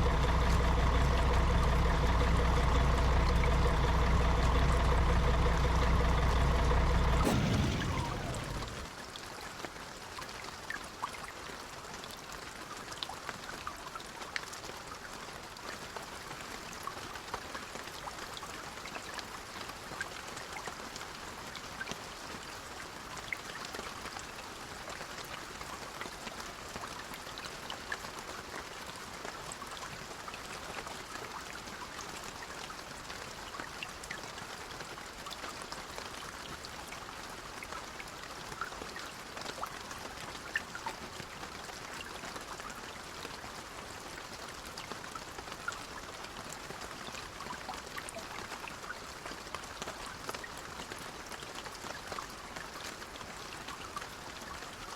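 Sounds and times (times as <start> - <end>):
rain pattering on vehicle: 0.0 - 8.9.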